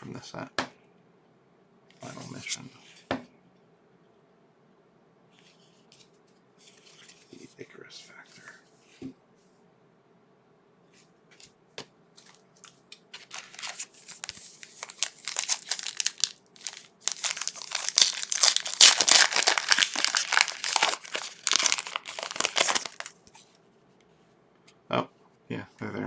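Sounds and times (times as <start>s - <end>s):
card pack wrapper tearing: 13.2s - 23.4s
wrapper crackling: 13.2s - 23.4s.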